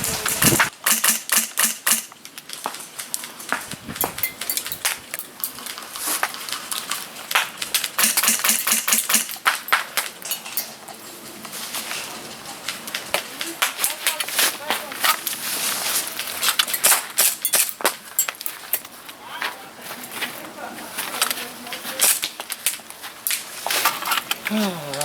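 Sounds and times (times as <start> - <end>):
airsoft guns firing: 0.2 - 2.1, 7.4 - 9.6.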